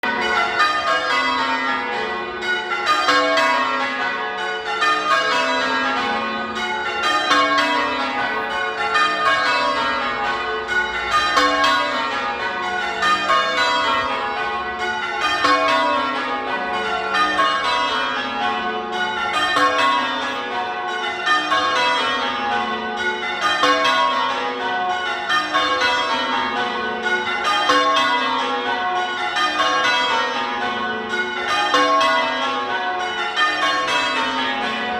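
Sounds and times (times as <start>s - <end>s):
church bells ringing: 0.0s - 34.9s.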